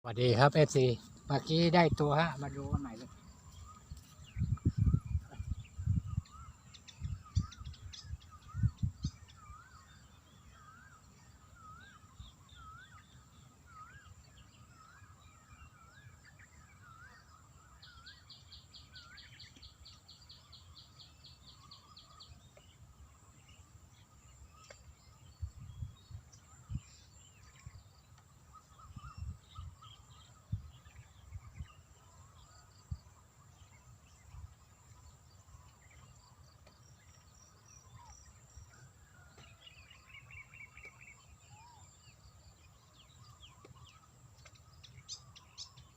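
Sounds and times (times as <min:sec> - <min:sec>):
bird trill: 0:00.0 - 0:45.9
birds chirping: 0:00.0 - 0:45.9.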